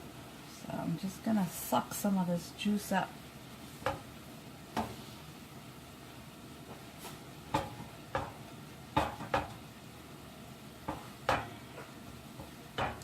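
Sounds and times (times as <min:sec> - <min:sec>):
squid sizzling on a grill: 0:01.2 - 0:13.0
utensils knocking on a grill: 0:03.8 - 0:04.0, 0:07.5 - 0:09.6, 0:10.8 - 0:13.0.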